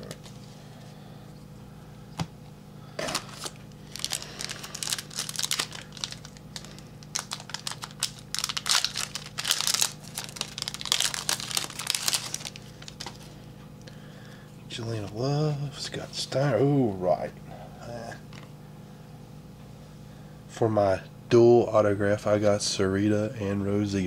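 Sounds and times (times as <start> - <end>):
cards being shuffled: 3.0 - 13.3
wrapper crinkling: 3.0 - 13.3.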